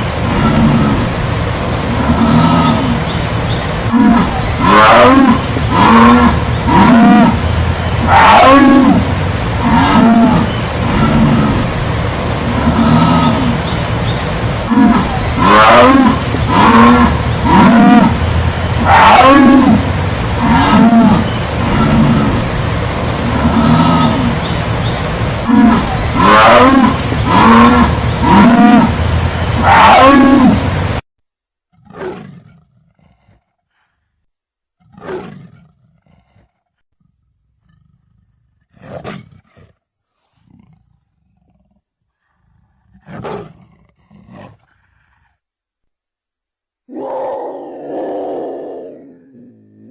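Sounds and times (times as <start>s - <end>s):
jaguar roaring: 0.0s - 31.0s, 46.9s - 49.9s
low growls: 0.0s - 31.0s, 46.9s - 49.9s
jaguar roaring grunts: 46.9s - 49.9s.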